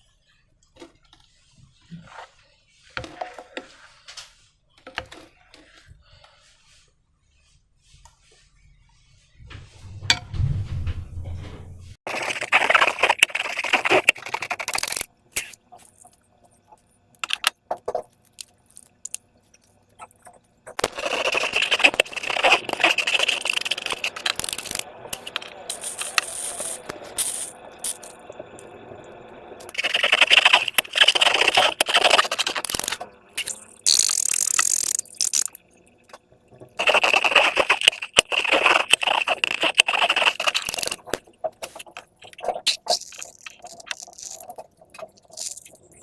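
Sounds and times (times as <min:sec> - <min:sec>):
slime squishing: 0:17.3 - 0:28.1, 0:29.7 - 0:35.6, 0:36.8 - 0:46.0.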